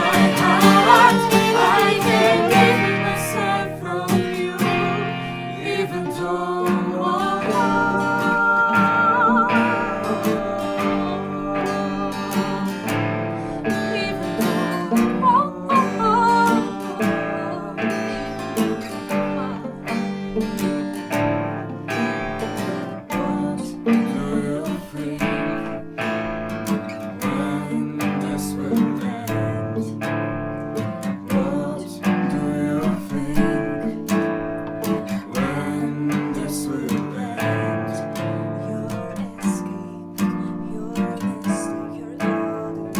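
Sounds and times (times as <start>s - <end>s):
sustained gliding melody: 0.0s - 25.9s
acoustic guitar strumming: 0.0s - 42.9s.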